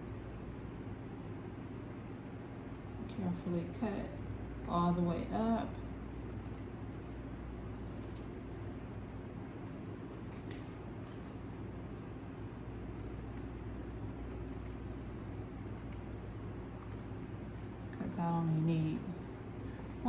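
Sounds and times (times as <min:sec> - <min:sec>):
steady low hum: 0:00.0 - 0:20.0
scissors cutting fabric: 0:02.2 - 0:04.9, 0:14.2 - 0:14.9, 0:15.6 - 0:16.1.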